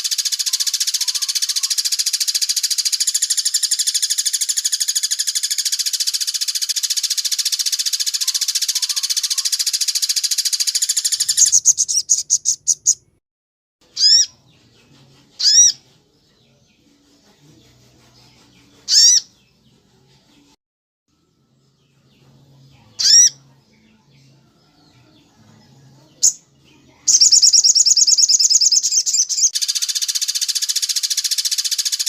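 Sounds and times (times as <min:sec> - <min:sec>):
songbird rattling trill: 0:00.0 - 0:13.1, 0:15.4 - 0:15.8, 0:18.8 - 0:19.3, 0:23.0 - 0:23.4, 0:27.0 - 0:32.0.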